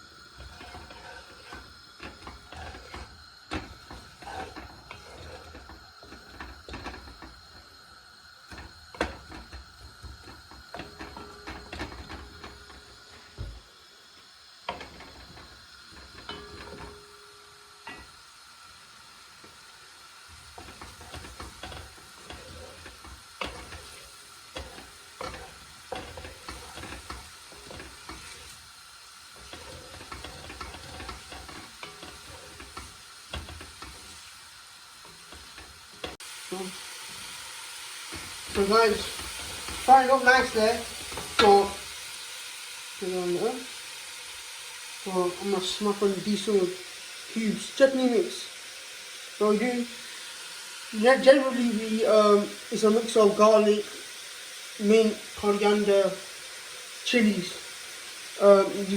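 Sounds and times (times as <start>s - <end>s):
utensil scraping a pot: 0.0s - 7.9s, 14.7s - 18.2s, 20.3s - 37.4s, 38.1s - 42.0s
onions sizzling in oil: 0.0s - 58.9s.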